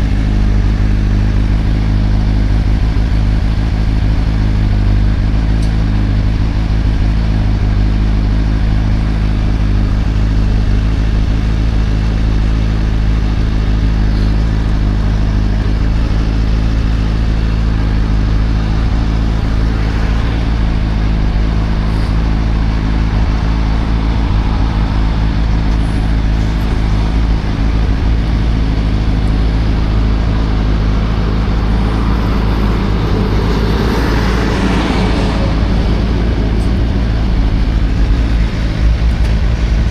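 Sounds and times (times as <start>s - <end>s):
motorcycle engine running: 0.0s - 39.9s
rushing noise: 15.2s - 39.9s
wind rush on microphone: 18.5s - 39.9s.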